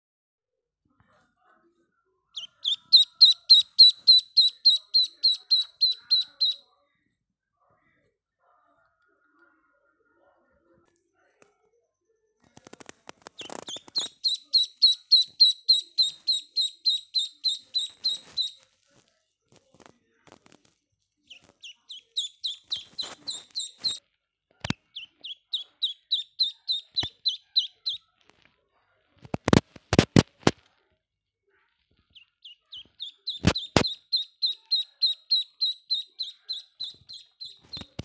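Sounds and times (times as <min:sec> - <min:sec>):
duckling peeping: 0:02.4 - 0:06.6, 0:13.3 - 0:18.6, 0:21.3 - 0:24.0, 0:24.6 - 0:28.0, 0:32.1 - 0:38.0.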